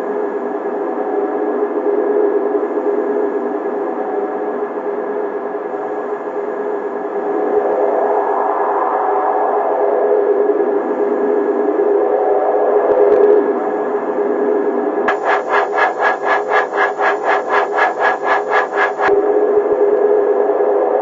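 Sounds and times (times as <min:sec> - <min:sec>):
steady hissing drone: 0:15.1 - 0:19.1.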